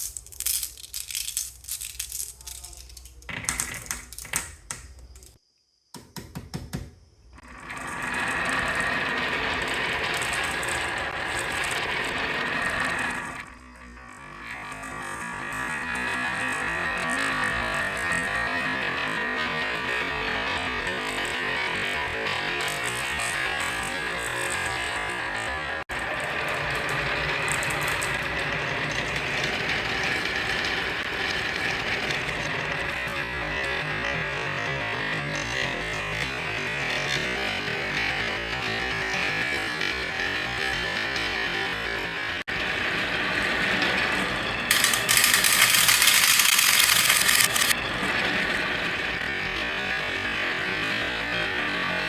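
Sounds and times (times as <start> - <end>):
marbles clattering on wooden track: 0.0 - 5.4, 7.6 - 13.4, 44.7 - 47.8.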